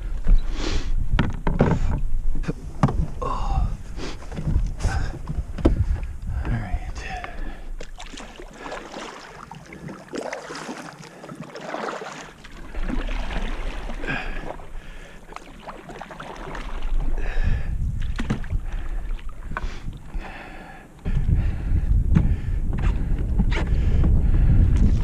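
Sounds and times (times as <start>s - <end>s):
wind buffeting microphone: 0.0s - 9.9s, 15.9s - 25.0s
canoe paddles splashing water: 1.5s - 21.0s.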